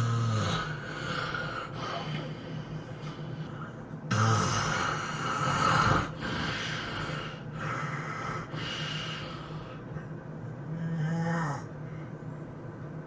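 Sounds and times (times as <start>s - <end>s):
person snoring heavily: 0.0s - 2.3s, 4.1s - 9.5s, 10.7s - 11.7s.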